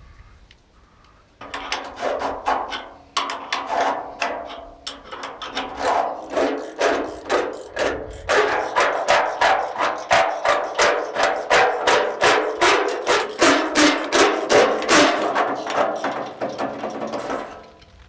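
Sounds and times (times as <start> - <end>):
hammer blows on metal: 5.8 - 17.0.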